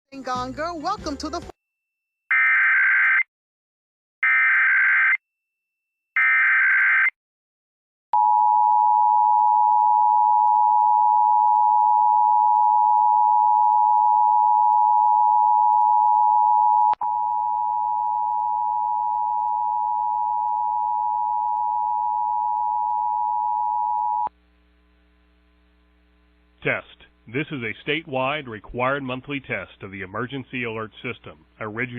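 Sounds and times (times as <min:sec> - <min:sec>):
low mains hum: 0:17.0 - 0:31.9.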